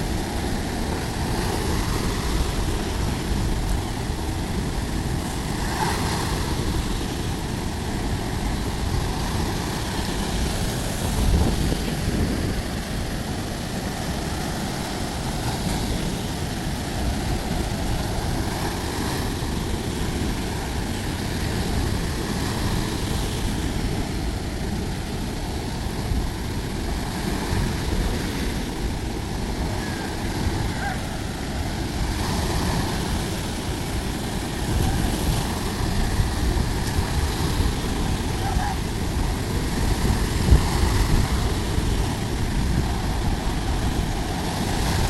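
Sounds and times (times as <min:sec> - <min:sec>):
sea surf washing onto beach: 0:00.0 - 0:45.0.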